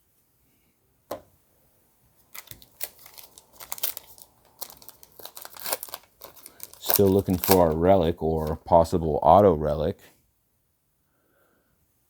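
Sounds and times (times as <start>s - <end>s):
wrapper crinkling and tearing: 2.3s - 8.6s.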